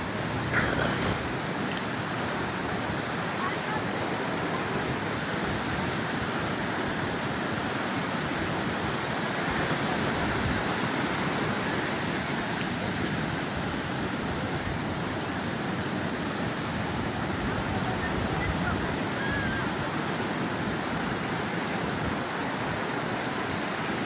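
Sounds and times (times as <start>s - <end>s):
sea surf on sandy beach: 0.0s - 24.0s.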